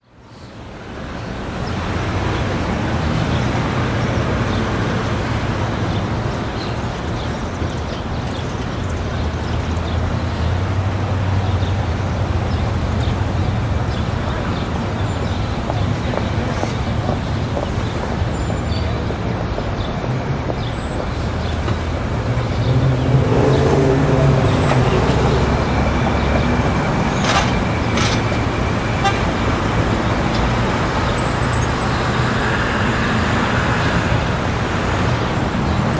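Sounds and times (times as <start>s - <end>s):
passing cars: 0.5s - 35.9s
loud vehicle passing: 9.6s - 35.9s
car horn tooting: 24.2s - 29.8s.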